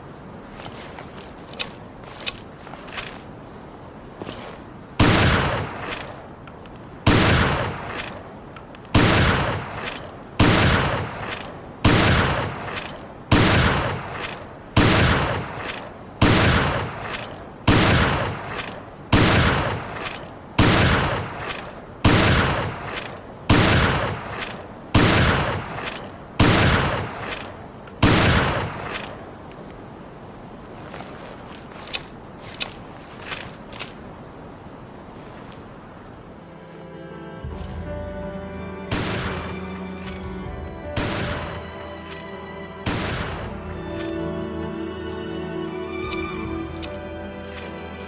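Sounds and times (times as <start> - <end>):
shotgun shots: 10.4 - 14.2, 25.0 - 25.8, 28.0 - 29.0.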